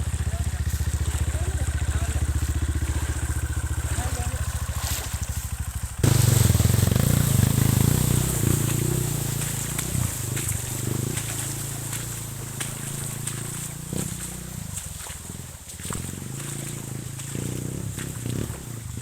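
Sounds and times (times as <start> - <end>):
motorcycle engine running: 0.0 - 19.0
rushing noise: 6.0 - 11.9.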